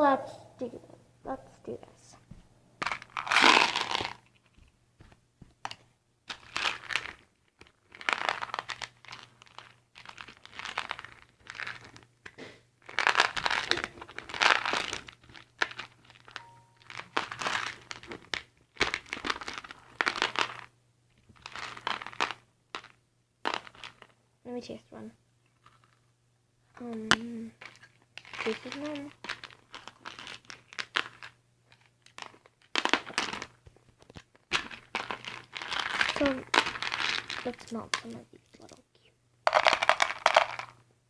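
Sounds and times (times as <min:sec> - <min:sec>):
plastic packaging crumpling: 0:02.8 - 0:04.4, 0:06.3 - 0:12.1, 0:12.8 - 0:20.7, 0:21.4 - 0:24.1, 0:27.6 - 0:38.2, 0:39.5 - 0:40.8.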